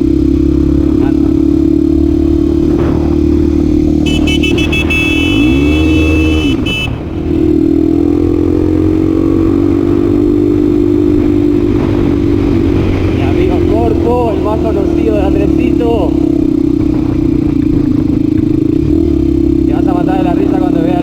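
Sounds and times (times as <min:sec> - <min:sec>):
motorcycle engine running: 0:00.0 - 0:21.0
high beeping tone: 0:04.1 - 0:06.9.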